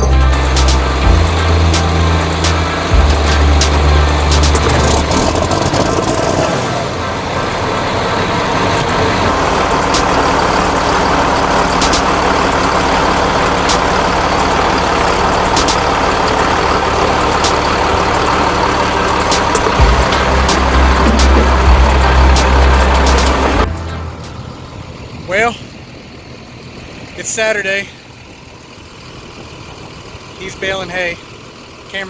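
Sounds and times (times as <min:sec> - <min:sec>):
heavy diesel engine running: 0:00.0 - 0:32.0
sharp clicks or clanks: 0:01.8 - 0:05.0, 0:11.6 - 0:12.7, 0:15.3 - 0:16.5.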